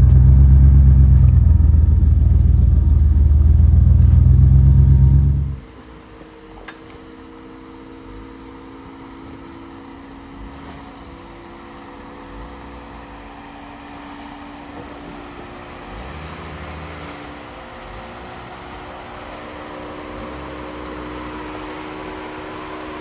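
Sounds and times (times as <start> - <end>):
vehicle engine running: 0.0 - 5.8.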